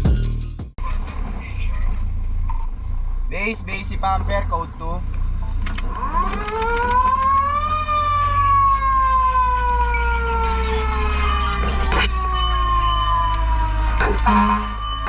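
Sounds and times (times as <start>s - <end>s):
fire truck siren wailing: 5.8s - 15.0s.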